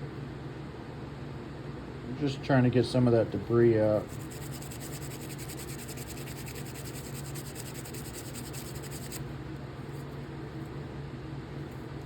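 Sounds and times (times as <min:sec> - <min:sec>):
toothbrush scrubbing: 0:04.0 - 0:09.2.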